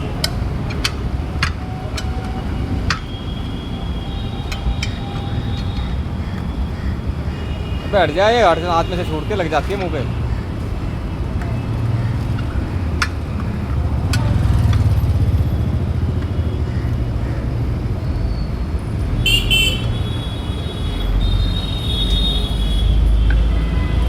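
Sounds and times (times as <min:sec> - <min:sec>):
road traffic engine rumble: 0:00.0 - 0:24.0
vehicle horn: 0:19.2 - 0:24.0.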